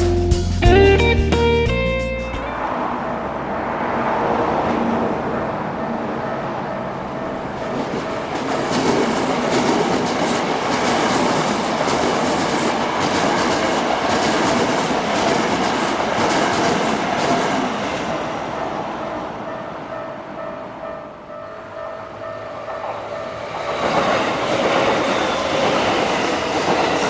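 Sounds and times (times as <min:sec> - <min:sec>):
level crossing warning bell: 0:04.5 - 0:18.2, 0:19.1 - 0:27.0
train wheels clacking over rail joints: 0:07.4 - 0:17.8.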